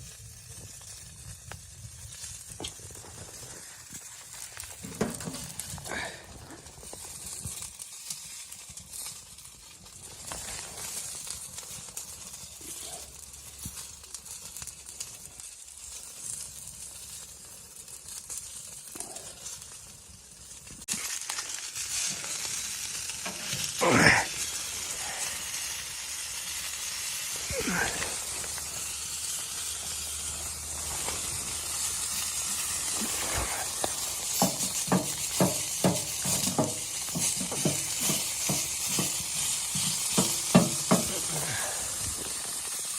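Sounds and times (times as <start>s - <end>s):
sizzling in a hot pan: 0.0s - 42.9s
loud scrape: 30.4s - 35.0s.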